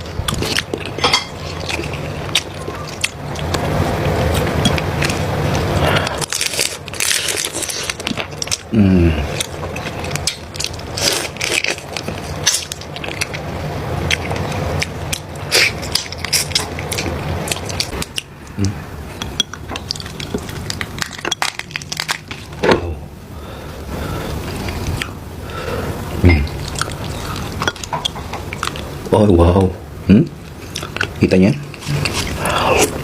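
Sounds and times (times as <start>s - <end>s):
chewing: 0.0s - 22.5s, 26.4s - 29.0s, 30.5s - 33.0s
seafood shells cracking: 6.0s - 8.7s, 14.1s - 18.5s, 19.1s - 22.6s.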